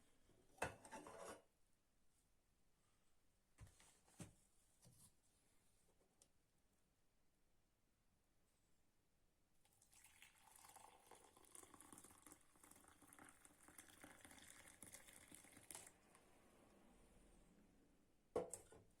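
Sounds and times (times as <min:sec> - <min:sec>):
liquid pouring into container: 0:09.7 - 0:16.1.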